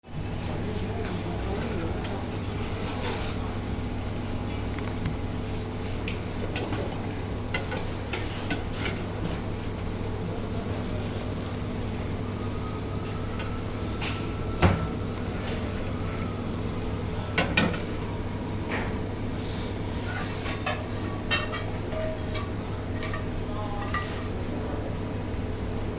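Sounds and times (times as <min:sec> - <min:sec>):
kitchen equipment hum: 0:00.0 - 0:25.9
dishes and utensils clinking: 0:20.0 - 0:24.4.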